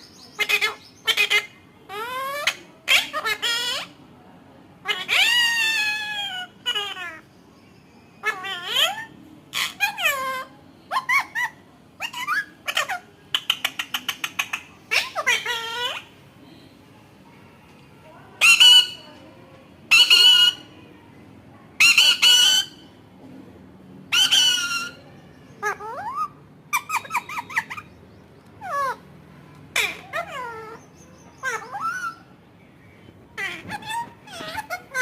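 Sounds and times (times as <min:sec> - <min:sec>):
parrot whistling and chattering: 0:00.0 - 0:04.0, 0:04.8 - 0:07.3, 0:08.2 - 0:16.2, 0:18.4 - 0:19.2, 0:19.9 - 0:20.7, 0:21.8 - 0:22.9, 0:24.1 - 0:29.0, 0:29.7 - 0:32.4, 0:33.4 - 0:35.0
parrot squawking: 0:00.3 - 0:04.0, 0:04.8 - 0:07.2, 0:08.2 - 0:16.2, 0:18.4 - 0:19.1, 0:19.9 - 0:20.7, 0:21.8 - 0:22.9, 0:24.1 - 0:25.0, 0:25.6 - 0:27.9, 0:28.6 - 0:29.0, 0:29.7 - 0:32.3, 0:33.4 - 0:35.0.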